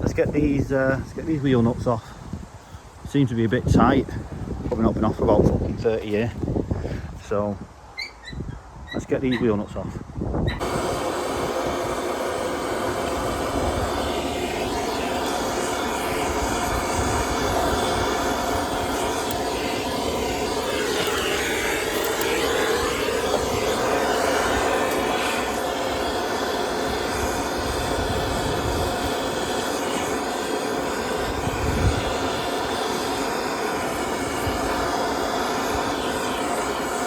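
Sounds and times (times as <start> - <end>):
motor running: 10.6 - 37.0.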